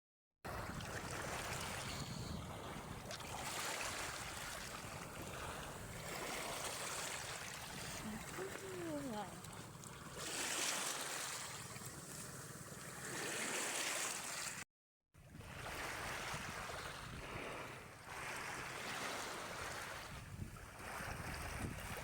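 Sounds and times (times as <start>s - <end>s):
sea waves washing: 0.5s - 14.6s.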